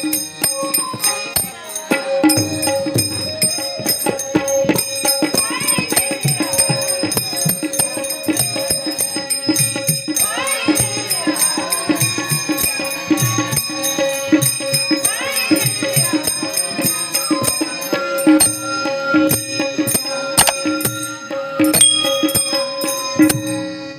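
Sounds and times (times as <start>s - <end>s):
hand cymbals jingling: 12.6s - 23.9s
steady drum beat: 20.4s - 23.5s.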